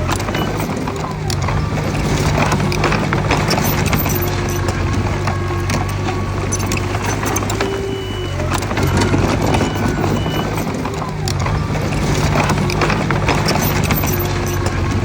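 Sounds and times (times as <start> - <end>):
bulldozer diesel engine running: 0.0 - 15.0
metallic clicks and clanks of tracks: 0.0 - 15.0.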